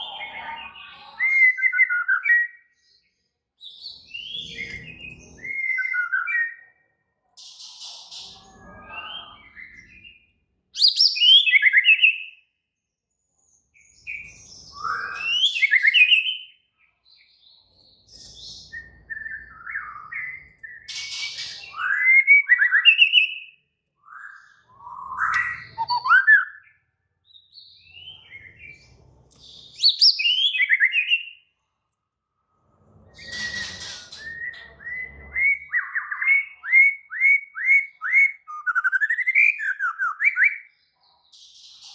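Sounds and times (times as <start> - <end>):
bird singing whistled phrases: 0.0 - 2.8, 4.1 - 6.7, 10.8 - 12.4, 14.0 - 16.6, 18.6 - 26.8, 29.8 - 31.4, 33.2 - 40.7.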